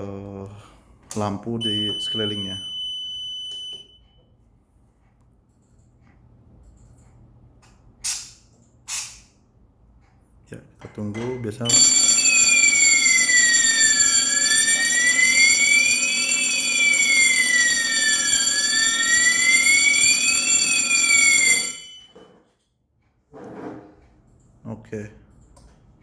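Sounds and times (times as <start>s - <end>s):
fire alarm siren: 1.1s - 4.2s, 11.7s - 22.4s
steady high tones: 1.6s - 4.0s, 11.7s - 22.2s.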